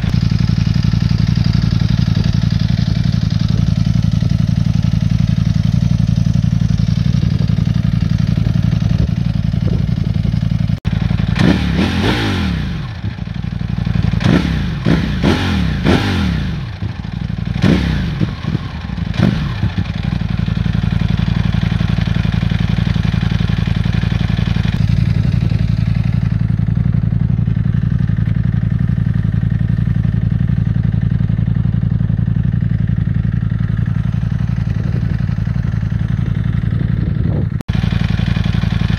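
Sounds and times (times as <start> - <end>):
motorcycle engine idling: 0.0 - 38.9
engine revving: 10.8 - 13.3, 13.9 - 20.2.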